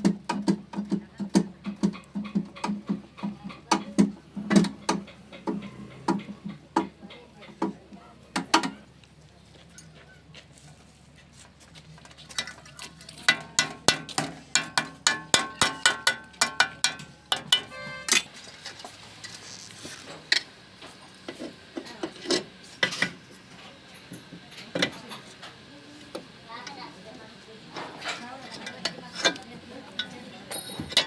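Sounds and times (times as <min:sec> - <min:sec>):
hand tools clicking on metal: 0:12.3 - 0:18.2.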